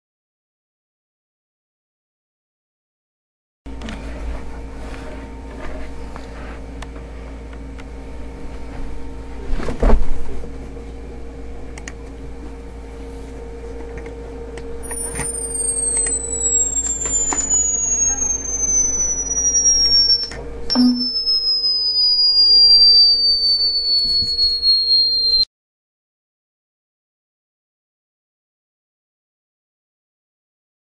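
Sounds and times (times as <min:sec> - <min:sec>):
steady low hum: 0:03.7 - 0:25.4
high-pitched tone sliding down: 0:14.8 - 0:25.5.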